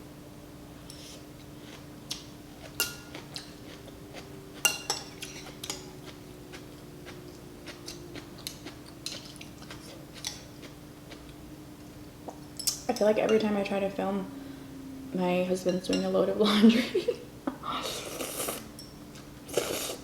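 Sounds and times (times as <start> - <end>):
steady low hum: 0.0 - 20.0
metal utensils clinking on bowl: 4.6 - 6.2.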